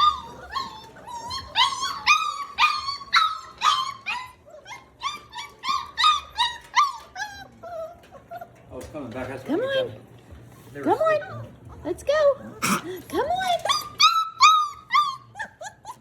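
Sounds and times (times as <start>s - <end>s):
puppies whining and yelping: 0.0s - 8.7s, 11.1s - 16.0s.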